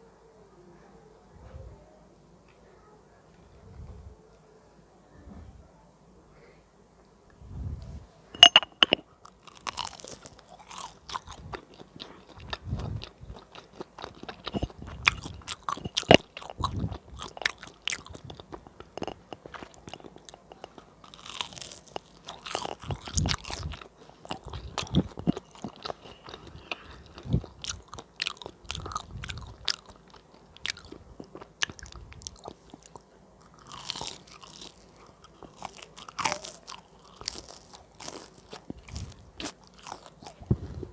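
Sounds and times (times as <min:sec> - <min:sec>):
crunchy food chewing: 0:08.4 - 0:40.9.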